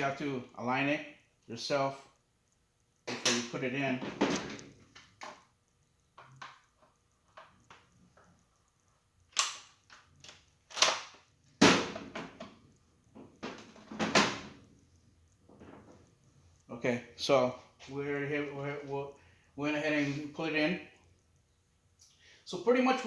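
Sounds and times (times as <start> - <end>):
plastic parts clicking and snapping: 9.3 - 14.8.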